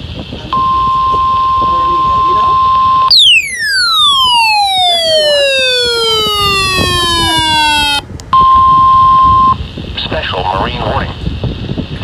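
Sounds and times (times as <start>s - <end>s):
electronic tone gliding downward: 0.6s - 8.0s.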